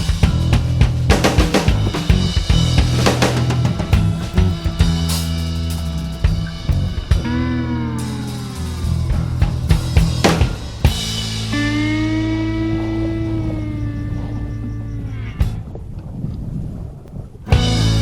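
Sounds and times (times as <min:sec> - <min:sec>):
drum kit beat: 0:00.0 - 0:12.3, 0:17.5 - 0:18.0.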